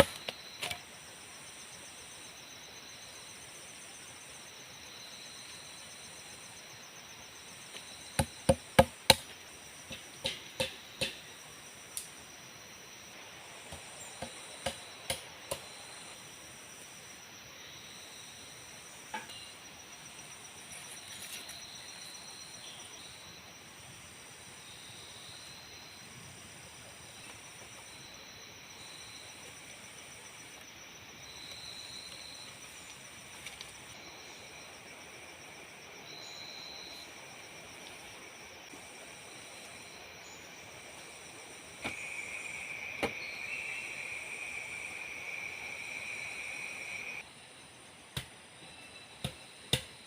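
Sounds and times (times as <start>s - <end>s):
insects buzzing: 0.0s - 50.0s
wood being struck: 8.2s - 9.3s, 9.9s - 11.3s.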